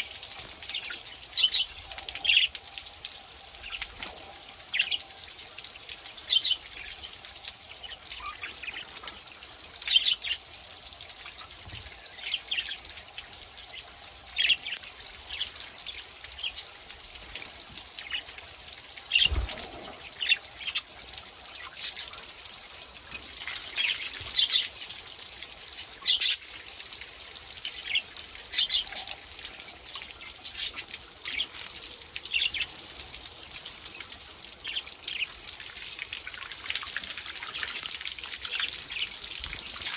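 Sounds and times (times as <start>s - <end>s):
small birds chirping: 0.0s - 2.7s, 6.1s - 22.5s, 23.1s - 25.0s, 25.6s - 26.6s, 27.5s - 32.8s
water trickling: 0.0s - 39.9s.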